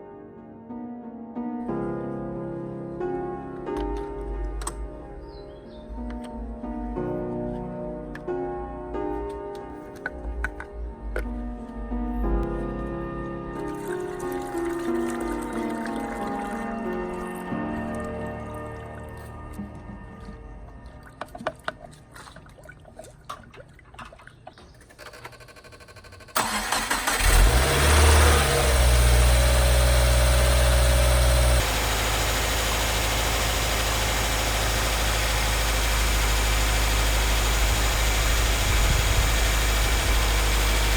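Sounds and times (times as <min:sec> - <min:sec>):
starter clicks: 0:24.7 - 0:27.7
car engine starting and idling: 0:24.8 - 0:40.9.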